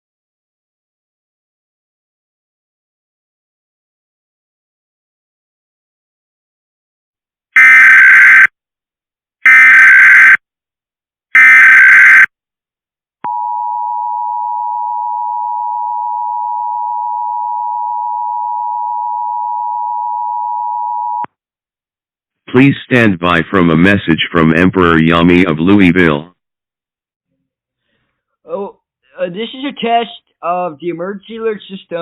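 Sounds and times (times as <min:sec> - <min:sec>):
data bursts: 0:07.6 - 0:08.5, 0:09.5 - 0:10.4, 0:11.4 - 0:12.3.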